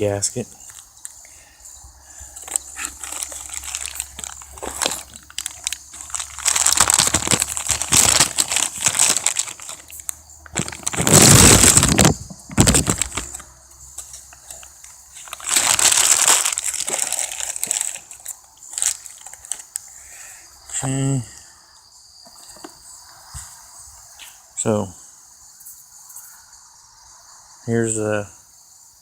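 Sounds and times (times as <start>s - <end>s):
packaging crinkling and rustling: 2.3s - 19.9s.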